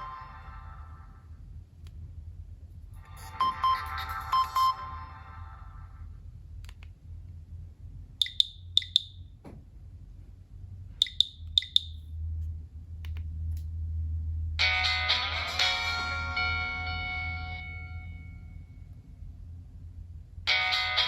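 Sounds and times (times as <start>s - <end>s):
ringtone: 3.0s - 5.6s, 8.2s - 9.2s, 11.0s - 12.0s, 20.5s - 21.0s
phone keypad click-beeps: 8.2s - 9.2s, 11.0s - 12.0s.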